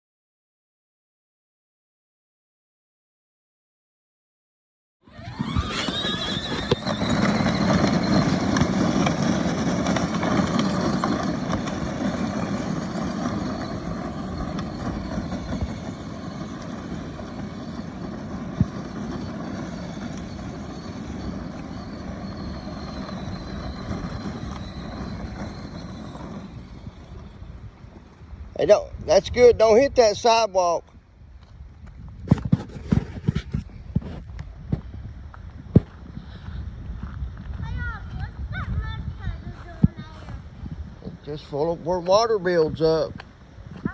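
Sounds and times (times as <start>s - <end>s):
electric motor whine: 5.1s - 9.2s
tyre running noise: 5.1s - 43.9s.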